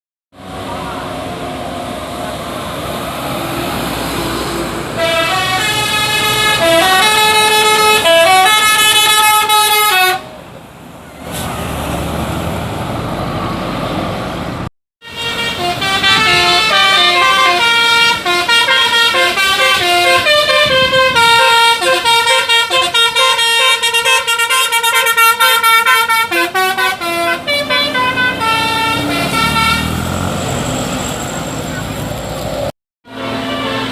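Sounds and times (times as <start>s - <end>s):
multi-tone horns playing melodies: 4.6s - 10.4s, 15.0s - 30.2s, 33.1s - 33.9s.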